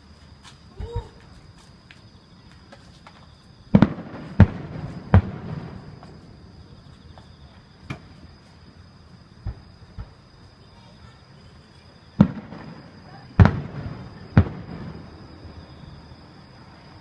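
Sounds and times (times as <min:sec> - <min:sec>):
fireworks bursting with loud bangs: 0:02.6 - 0:08.7, 0:09.3 - 0:10.3, 0:12.0 - 0:16.7.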